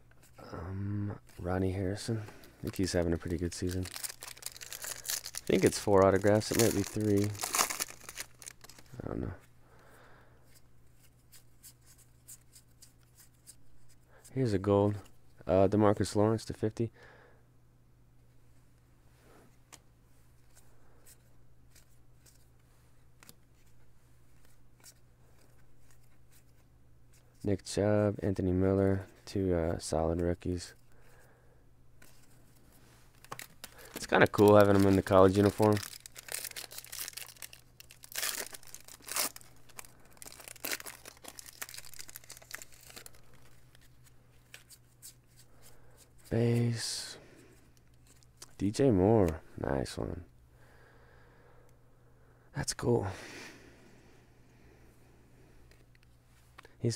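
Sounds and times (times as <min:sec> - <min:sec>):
low steady hum: 0:00.0 - 0:56.9
trading cards flipped by hand: 0:33.1 - 0:46.3.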